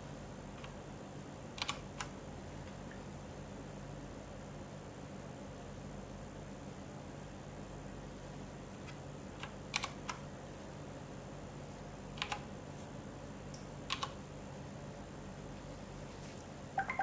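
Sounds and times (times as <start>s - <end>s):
steady low hum: 0.0s - 17.0s
mechanical keyboard clicks: 1.6s - 2.1s, 9.4s - 10.2s, 12.2s - 12.5s, 13.9s - 14.2s.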